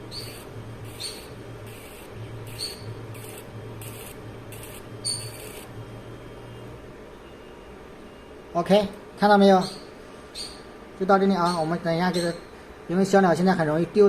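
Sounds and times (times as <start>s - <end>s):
laser engraver hum: 0.0s - 8.5s.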